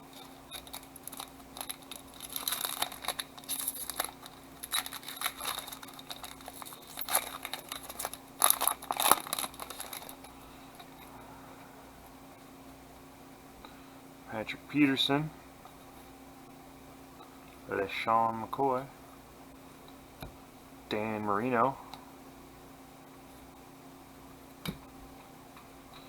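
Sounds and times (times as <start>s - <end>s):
wrapper tearing and crinkling: 0.1s - 11.0s.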